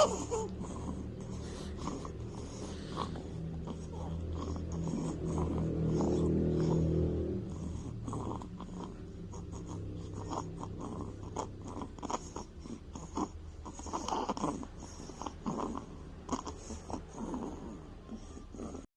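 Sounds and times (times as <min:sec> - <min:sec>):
baby snuffling and snoring: 0:00.0 - 0:18.9.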